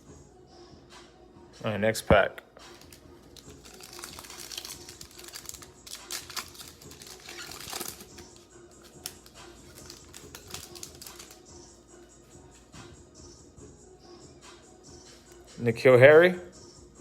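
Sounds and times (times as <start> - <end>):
cards clicking and flicking: 2.6 - 11.4
wrapper crinkling and tearing: 2.7 - 11.4.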